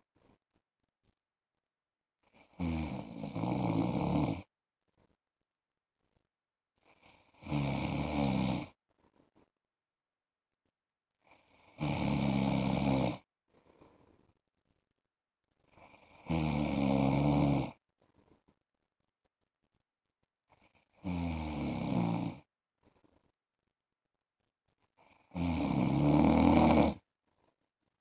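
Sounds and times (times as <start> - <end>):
man snoring: 2.5 - 4.5, 7.2 - 8.7, 11.6 - 13.2, 16.0 - 17.8, 21.0 - 22.4, 25.3 - 27.0.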